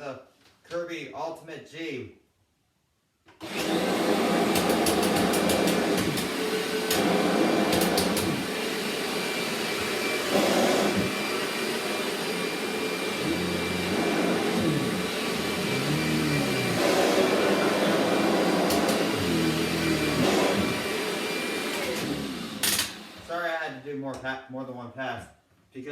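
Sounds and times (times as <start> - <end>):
upright vacuum cleaner whining: 3.4 - 23.4.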